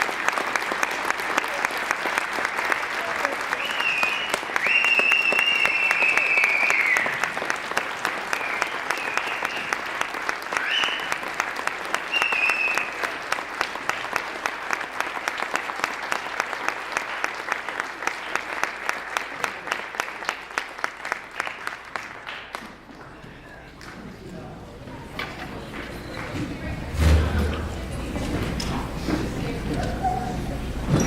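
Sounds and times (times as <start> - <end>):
audience applauding: 0.0 - 24.3
shrill whistles: 3.5 - 7.3, 8.3 - 9.8, 10.5 - 11.2, 12.0 - 13.1.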